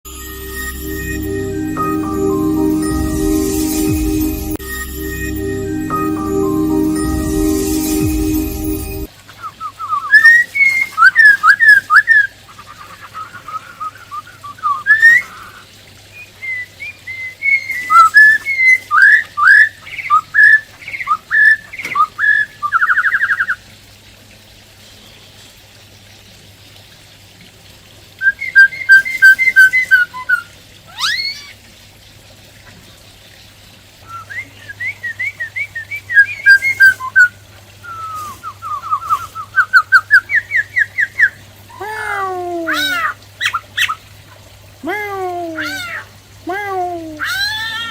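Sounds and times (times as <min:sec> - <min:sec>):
bird singing whistled notes: 0:28.2 - 0:30.4, 0:34.0 - 0:41.4.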